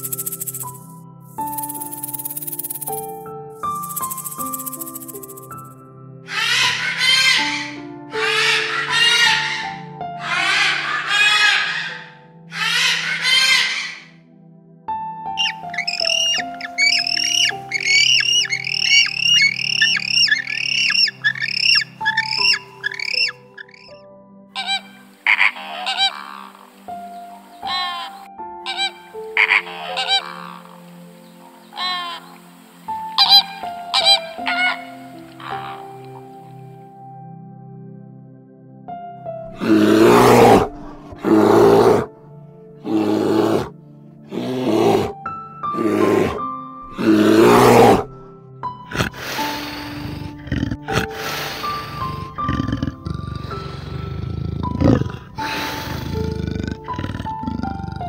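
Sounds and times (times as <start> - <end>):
soft background music: 0.0 - 58.0
animal calling roughly: 6.3 - 14.1, 15.4 - 23.9, 24.6 - 26.7, 27.6 - 30.8, 31.8 - 32.3, 33.2 - 36.1, 39.5 - 42.1, 42.8 - 48.1, 48.9 - 53.5
bird squawking: 6.3 - 14.1, 15.4 - 24.0, 24.6 - 26.8, 27.6 - 32.4, 33.2 - 36.1.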